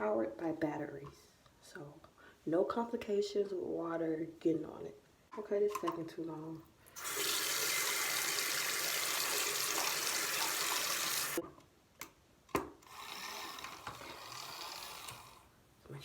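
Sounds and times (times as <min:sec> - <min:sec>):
water running from faucet: 0:07.0 - 0:11.4.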